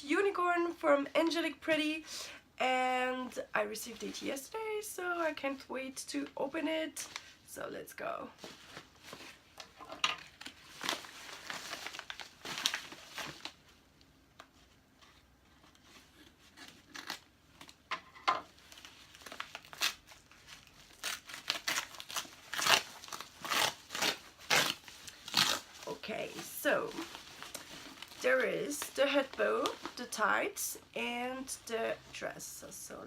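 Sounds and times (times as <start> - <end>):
packaging crinkling and ripping: 8.5 - 13.8, 15.7 - 17.8, 18.5 - 30.0.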